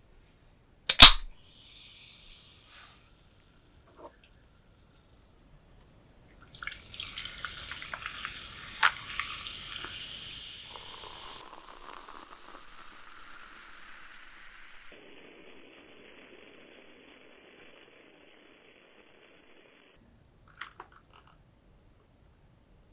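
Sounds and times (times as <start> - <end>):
sharp crack: 0.9 - 3.0, 6.6 - 14.9
soft wet sizzle: 1.3 - 15.0
wet crackling and clicking food: 6.3 - 12.0.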